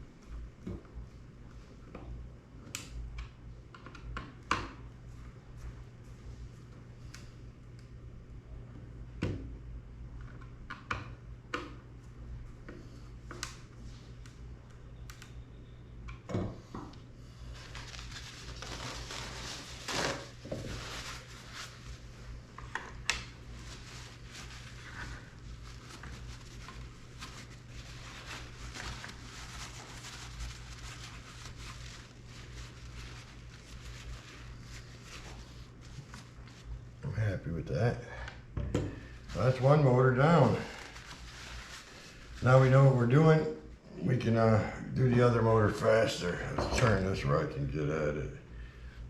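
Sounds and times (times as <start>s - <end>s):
steady low hum: 0.0s - 49.0s
rubbing and rustling: 17.4s - 36.8s, 40.4s - 42.7s.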